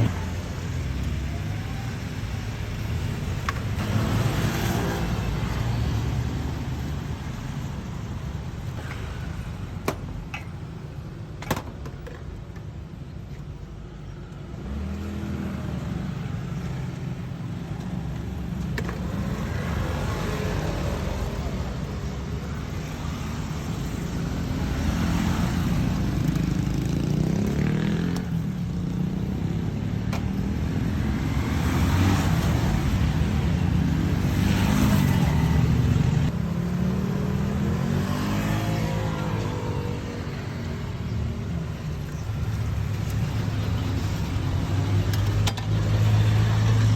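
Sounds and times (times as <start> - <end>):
road rumble: 0.0 - 46.9.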